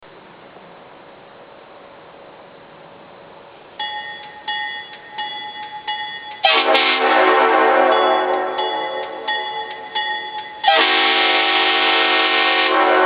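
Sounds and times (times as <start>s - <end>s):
short ringing tone: 3.8s - 6.5s
locomotive air horn chord: 6.4s - 9.3s, 10.7s - 13.0s.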